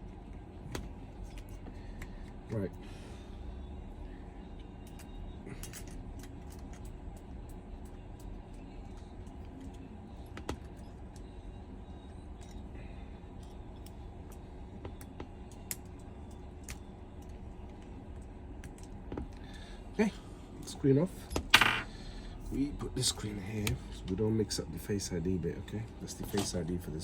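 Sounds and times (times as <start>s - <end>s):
low background hum: 0.0s - 27.0s
metal tools clicking on phone parts: 4.6s - 8.6s.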